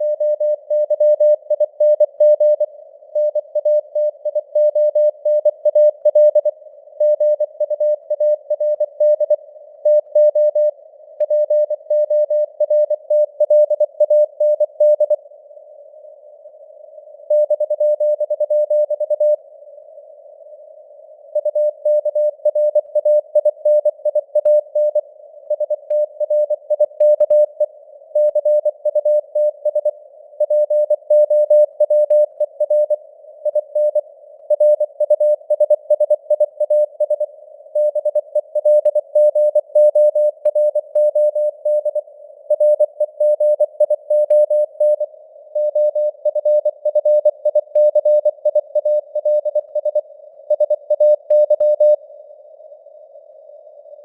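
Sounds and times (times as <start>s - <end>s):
morse code tone beeping: 45.6s - 52.0s.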